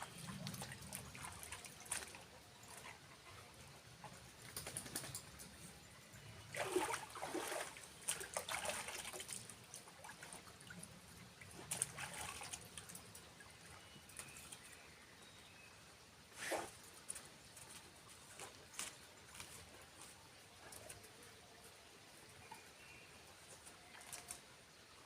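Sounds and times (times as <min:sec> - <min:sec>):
water trickling and splashing: 0:00.0 - 0:25.0.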